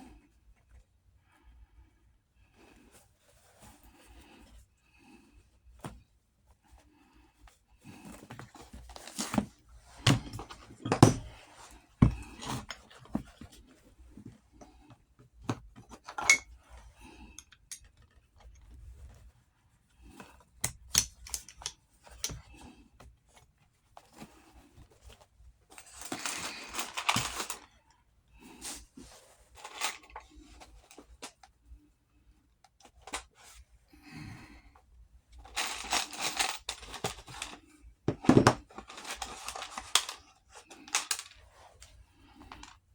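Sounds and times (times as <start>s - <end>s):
leather scraping and rustling: 7.8s - 15.0s.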